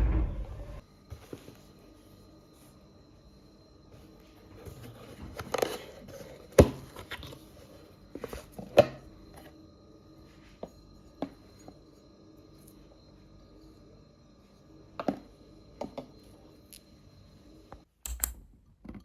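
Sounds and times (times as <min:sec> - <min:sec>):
sharp knocks: 0:00.0 - 0:00.8.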